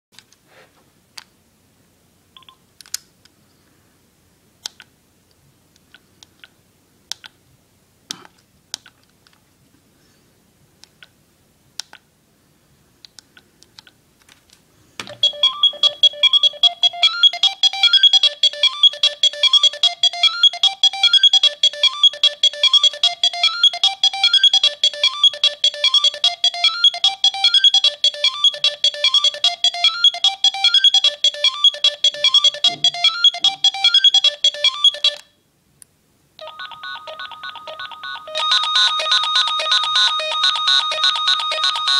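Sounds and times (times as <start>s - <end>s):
electronic ringtone melody: 15.1s - 35.2s, 36.4s - 41.9s.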